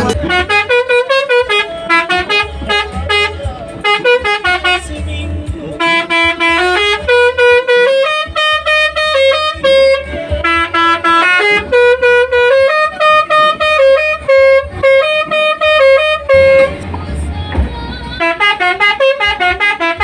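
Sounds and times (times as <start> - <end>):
bus multi-tone horn melody: 0.0 - 20.0.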